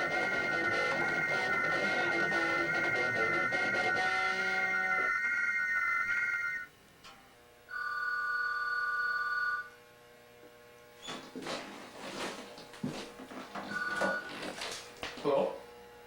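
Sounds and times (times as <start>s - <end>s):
background music: 0.0s - 5.3s
telephone ringing: 0.0s - 6.7s, 7.7s - 9.8s, 13.6s - 14.6s.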